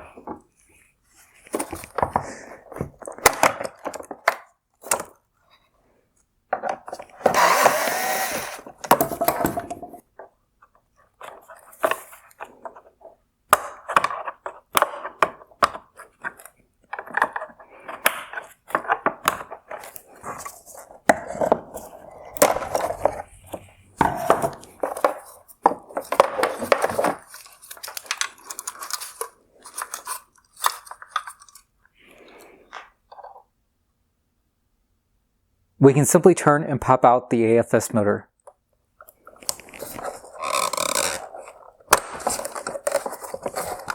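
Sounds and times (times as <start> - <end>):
plastic parts clicking and scraping: 6.6 - 31.8, 39.0 - 43.9.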